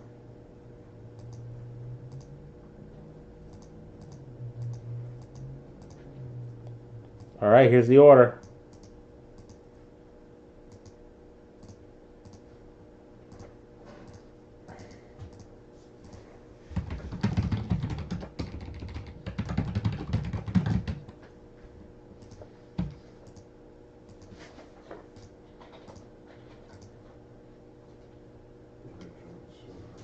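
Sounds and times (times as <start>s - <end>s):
fast typing on keyboard: 16.7s - 21.2s.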